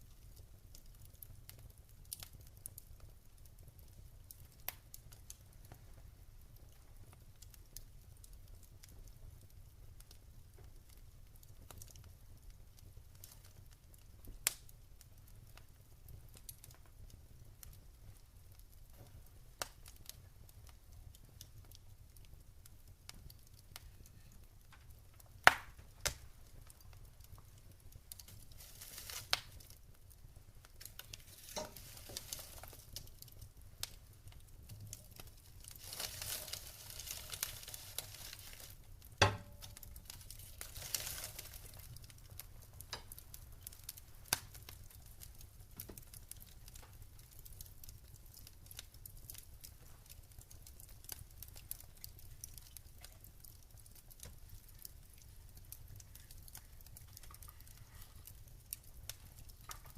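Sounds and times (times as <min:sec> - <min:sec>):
wood fire crackling: 0:00.0 - 0:59.9
sharp fire pops: 0:24.6 - 0:47.3
soft hissing: 0:26.2 - 0:29.8, 0:30.4 - 0:43.1.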